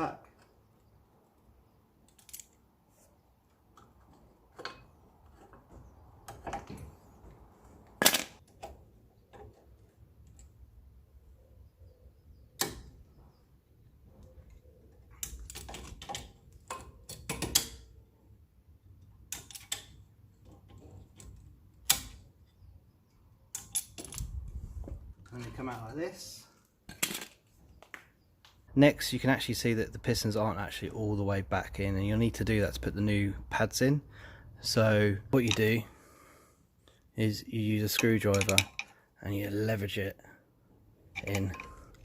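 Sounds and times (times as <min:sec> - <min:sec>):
metallic clicks and clanks: 0:15.0 - 0:17.9, 0:19.2 - 0:22.2, 0:37.8 - 0:39.0, 0:41.1 - 0:42.0.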